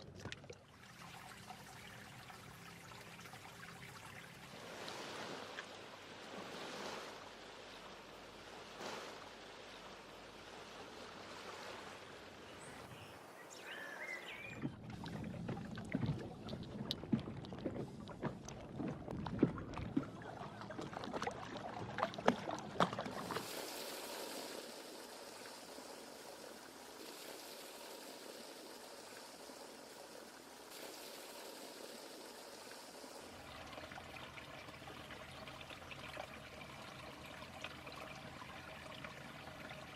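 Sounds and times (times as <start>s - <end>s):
water lapping and trickling: 0.0s - 39.9s
sharp splashes: 19.3s - 34.6s.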